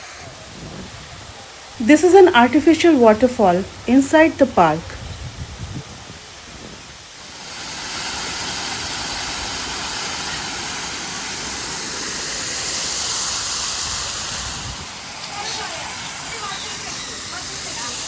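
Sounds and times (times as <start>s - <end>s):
water pouring down waterfall: 0.0s - 1.8s, 5.4s - 18.0s.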